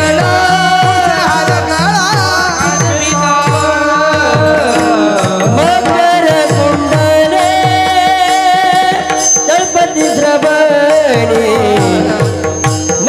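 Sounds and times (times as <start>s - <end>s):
devotional melody: 0.0s - 13.0s
tabla drum strokes: 0.0s - 13.0s.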